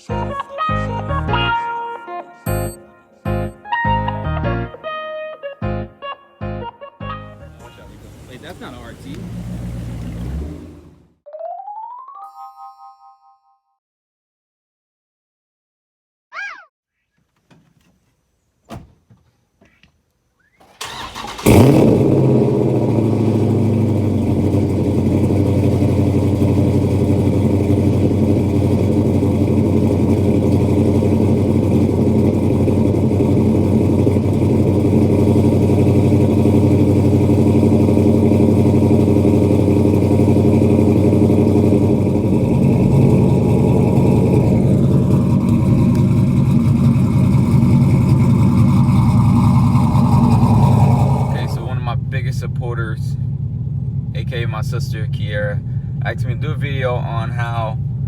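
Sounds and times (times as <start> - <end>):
car engine revving and idling: 7.4 - 11.2, 20.8 - 58.0
starter cranking: 20.6 - 23.1.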